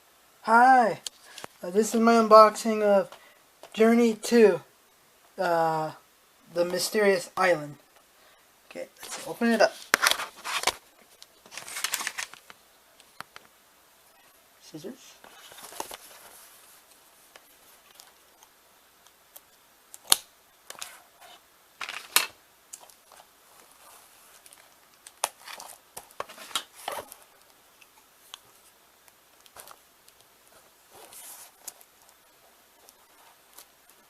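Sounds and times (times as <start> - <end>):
plastic packaging crinkling: 9.0 - 12.6.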